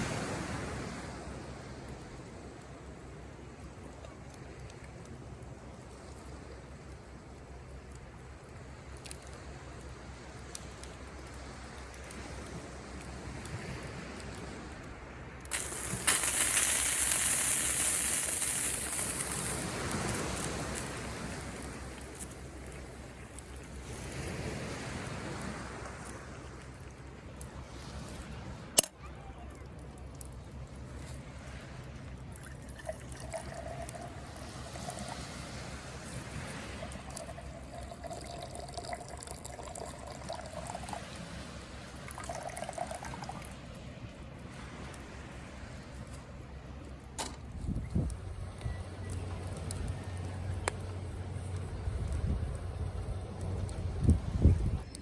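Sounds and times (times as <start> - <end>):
fire crackling: 0.0 - 55.0
coffee maker hissing: 15.5 - 23.3
coffee pouring into cup: 32.4 - 35.2, 36.8 - 41.0, 42.1 - 43.5.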